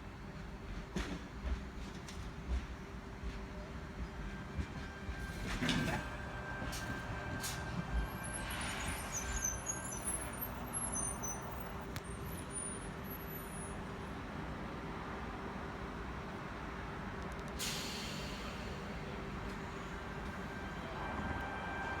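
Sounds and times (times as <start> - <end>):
electric train humming: 2.9 - 11.7, 18.4 - 22.0
air brake hisses: 17.6 - 19.0.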